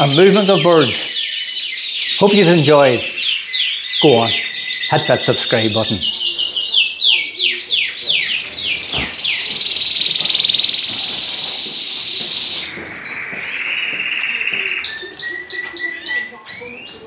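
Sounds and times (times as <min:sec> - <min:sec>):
finch singing: 0:00.0 - 0:17.0.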